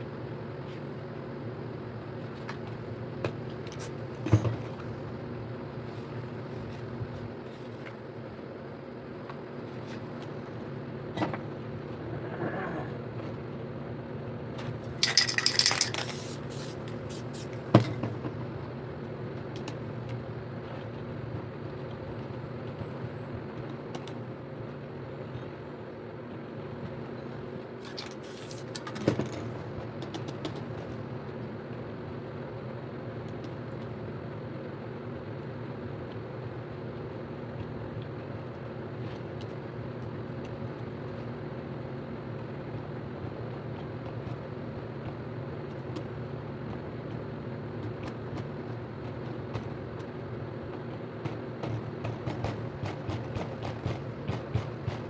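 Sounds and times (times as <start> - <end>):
steady low hum: 0.0 - 55.0
spray paint can hissing: 15.0 - 17.6, 27.9 - 28.8.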